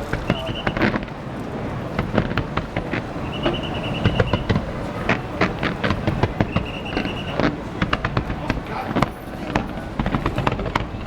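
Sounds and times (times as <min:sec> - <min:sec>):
fireworks bangs and crackles: 0:00.0 - 0:11.0
high whistling tone: 0:00.2 - 0:00.9, 0:03.2 - 0:04.6, 0:06.2 - 0:07.5.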